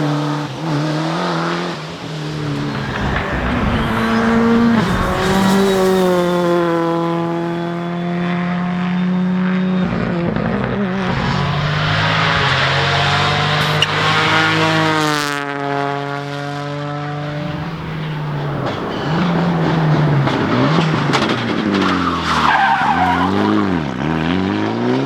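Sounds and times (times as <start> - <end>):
rally car engine revving: 0.0 - 25.0
thin high whine: 2.2 - 7.1.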